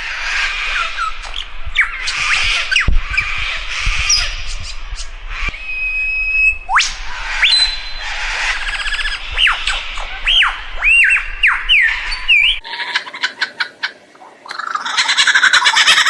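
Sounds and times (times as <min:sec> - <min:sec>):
bird whistling: 0:05.5 - 0:12.6.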